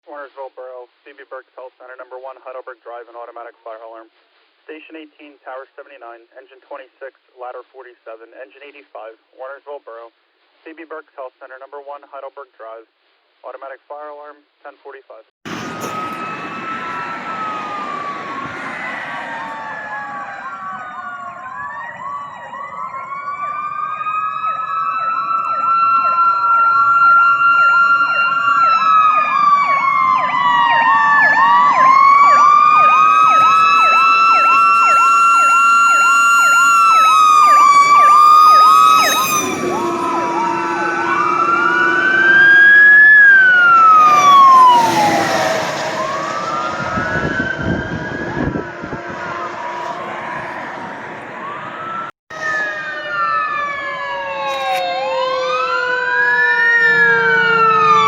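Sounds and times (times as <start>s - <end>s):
fire truck sirens wailing: 15.5s - 58.0s
steady low siren tone: 15.5s - 58.0s.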